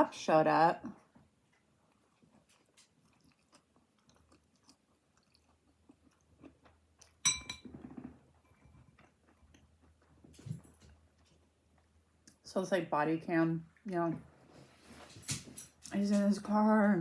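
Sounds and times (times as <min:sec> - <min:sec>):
chewing and biting pizza: 0:01.4 - 0:07.2, 0:08.4 - 0:12.2.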